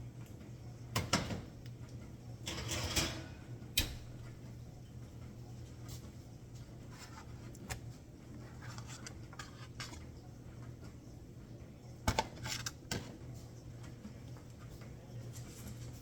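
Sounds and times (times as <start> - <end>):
steady low hum: 0.0 - 16.0
cookware clattering: 2.4 - 3.4.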